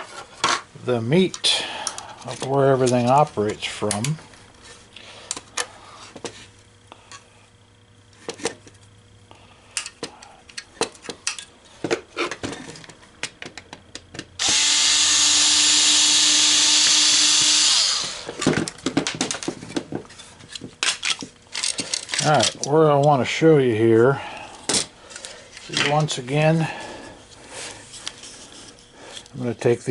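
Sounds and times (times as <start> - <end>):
small parts clicking and clattering: 9.7 - 14.3, 18.0 - 23.2
power drill running: 14.4 - 18.5.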